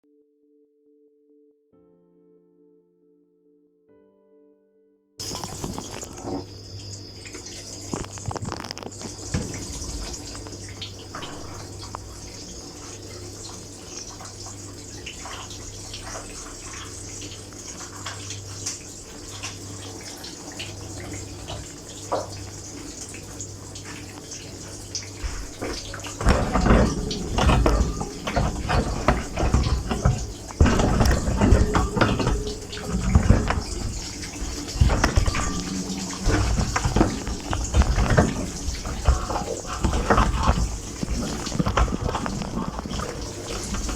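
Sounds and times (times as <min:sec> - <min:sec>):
water spraying: 0:05.2 - 0:06.5, 0:07.2 - 0:43.9
dishwasher hum: 0:05.2 - 0:43.9
water trickling and splashing: 0:05.2 - 0:43.9.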